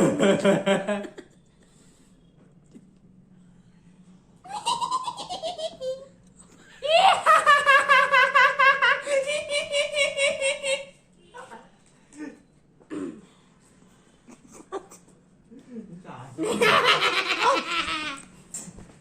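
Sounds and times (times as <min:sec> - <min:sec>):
high-pitched laughter: 0:06.8 - 0:10.9.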